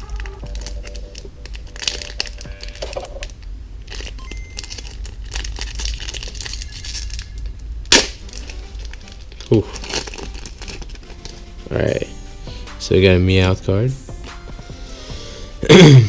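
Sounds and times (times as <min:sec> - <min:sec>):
card pack wrapper crinkling: 0:00.0 - 0:11.6
low steady hum: 0:00.0 - 0:16.0
wrapper sharp rip: 0:07.9 - 0:11.4.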